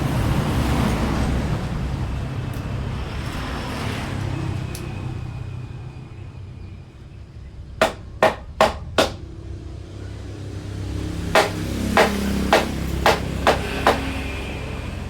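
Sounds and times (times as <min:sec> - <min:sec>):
hammer striking wood: 0:07.8 - 0:09.3, 0:11.4 - 0:14.2.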